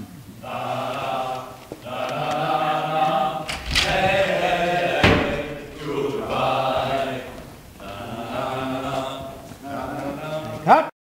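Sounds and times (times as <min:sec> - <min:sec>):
choir singing over speakers: 0:00.4 - 0:10.8
sharp knock: 0:03.5 - 0:09.1.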